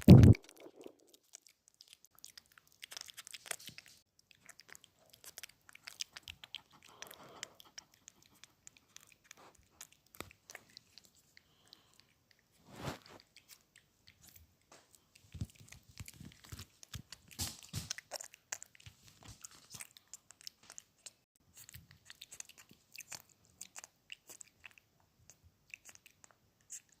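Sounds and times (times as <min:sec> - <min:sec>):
mouth clicks: 0:00.0 - 0:01.3
person chewing and crunching food: 0:00.0 - 0:27.0.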